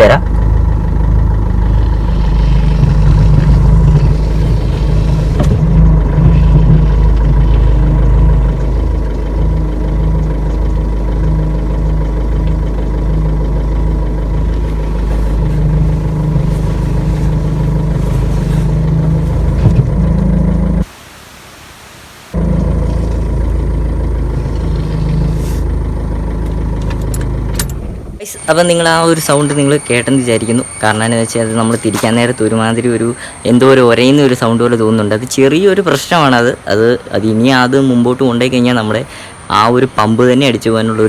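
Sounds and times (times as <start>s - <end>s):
car engine idling: 0.0s - 21.0s, 22.3s - 41.0s
power steering pump rubbing: 1.7s - 11.4s, 13.5s - 20.9s, 24.2s - 27.8s.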